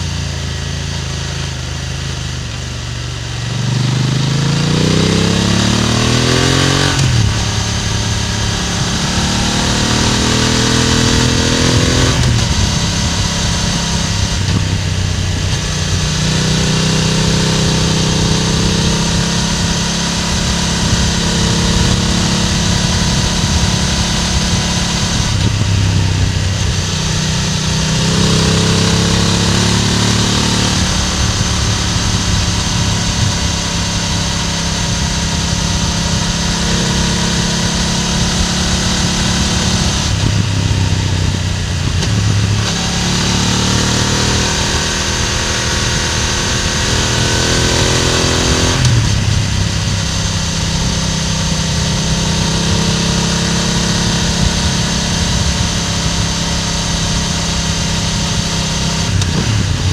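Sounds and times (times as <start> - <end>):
motorcycle engine cruising: 0.0 - 59.9.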